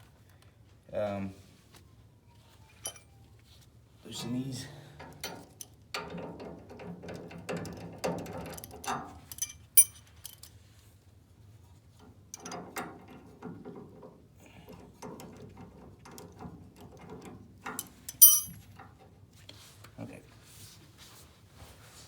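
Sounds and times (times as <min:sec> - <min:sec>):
sharp metal clink: 0:02.8 - 0:03.0, 0:09.4 - 0:10.0, 0:18.1 - 0:18.6
ratchet wrench clicking: 0:18.1 - 0:18.5.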